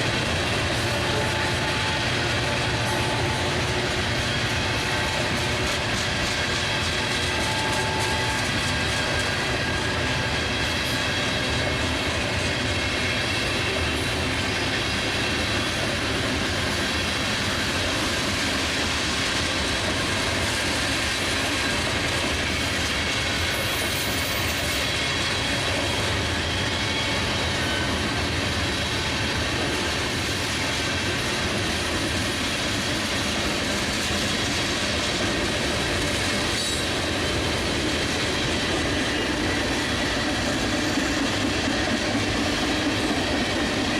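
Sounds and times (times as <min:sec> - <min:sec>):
train wheels rumbling on rails: 0:00.0 - 0:43.9
wheel squeal: 0:22.8 - 0:28.0.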